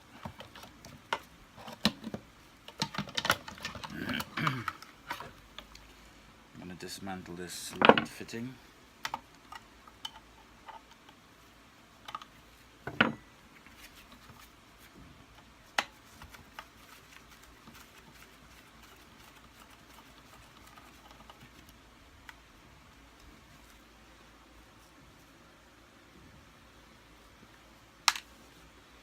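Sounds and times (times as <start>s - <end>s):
clicks and knocks of handled parts: 0.1s - 5.9s, 9.0s - 11.2s.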